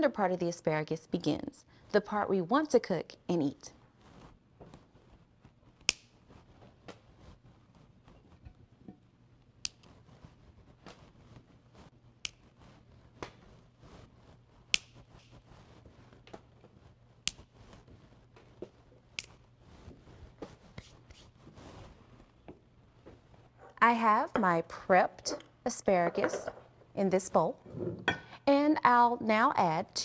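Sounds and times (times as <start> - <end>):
faint handling sounds: 3.8 - 23.8
asparagus snapping: 14.7 - 15.3.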